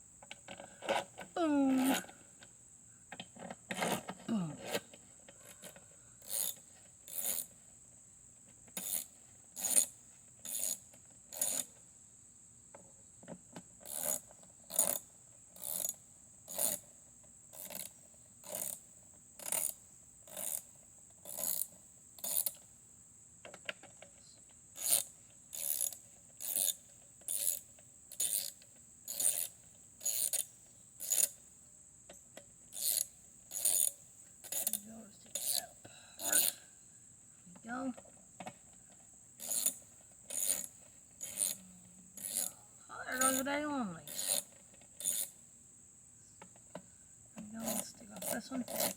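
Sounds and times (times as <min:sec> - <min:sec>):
ratchet wrench clicking: 0:06.2 - 0:07.5, 0:08.8 - 0:11.7, 0:13.8 - 0:16.9, 0:17.6 - 0:22.7, 0:24.8 - 0:31.4, 0:32.7 - 0:36.5, 0:39.4 - 0:41.6, 0:42.2 - 0:42.6, 0:43.2 - 0:43.5, 0:44.1 - 0:45.4, 0:47.6 - 0:48.9.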